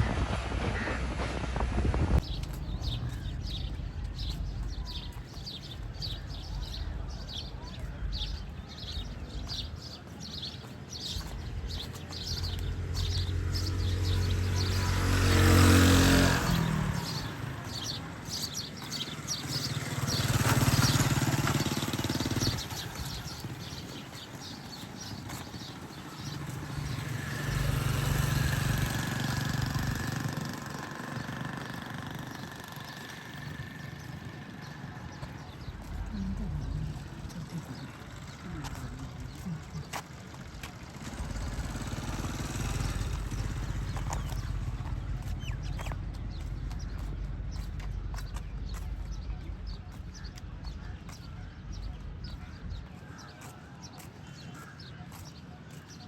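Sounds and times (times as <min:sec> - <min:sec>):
vehicles passing: 0:00.0 - 0:56.0.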